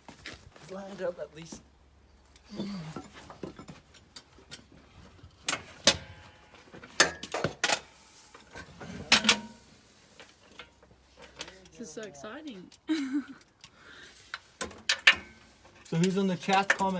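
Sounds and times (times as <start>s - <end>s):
knocks and clanks on engine: 2.6s - 7.9s.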